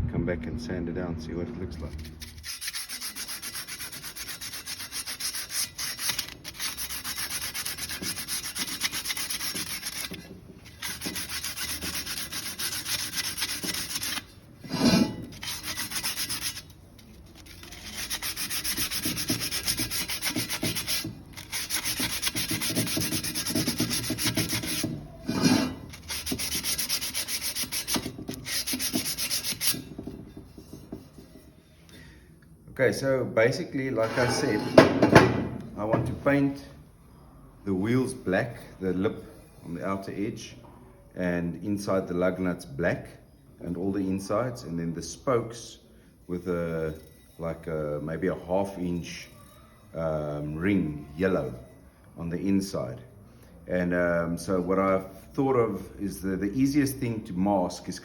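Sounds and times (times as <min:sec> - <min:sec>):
sanding abrasive rasp: 0:02.0 - 0:16.7, 0:17.4 - 0:29.9.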